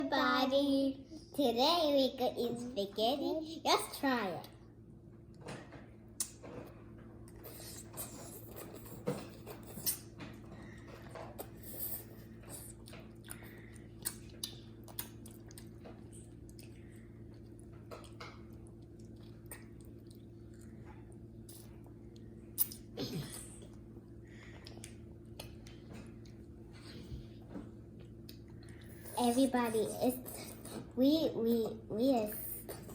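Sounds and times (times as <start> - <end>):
faint electrical hum: 0.0 - 32.9
chewing and wet mouth clicks: 6.2 - 6.4, 12.5 - 22.9, 24.6 - 26.4, 28.0 - 28.8
mouth smacks: 22.5 - 23.5.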